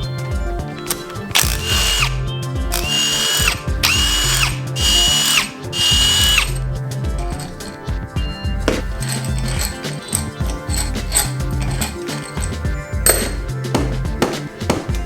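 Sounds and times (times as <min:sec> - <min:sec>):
background music with bass line: 0:00.0 - 0:15.0
power tool whining: 0:00.8 - 0:07.8, 0:08.9 - 0:12.6.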